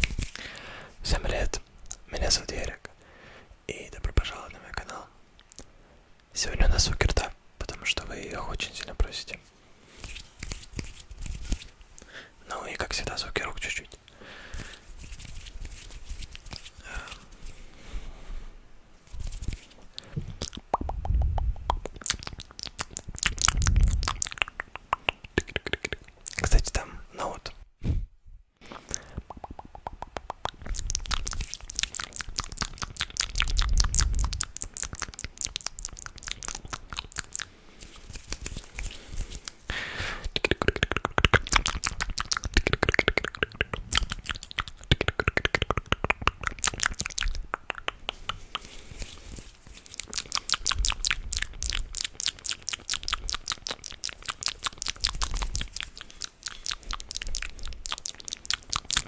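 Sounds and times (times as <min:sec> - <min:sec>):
rapid crackly clicking: 0:40.3 - 0:59.0.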